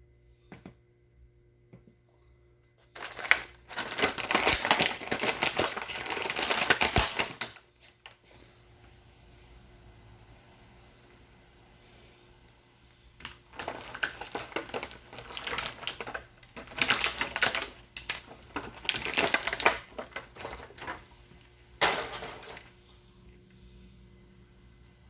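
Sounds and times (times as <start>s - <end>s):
plastic packaging crinkling: 2.8s - 8.4s, 13.2s - 22.8s.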